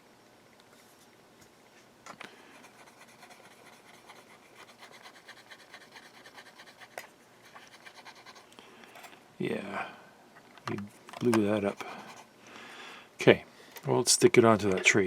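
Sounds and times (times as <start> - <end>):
tool scratching circuit board: 2.6 - 8.5.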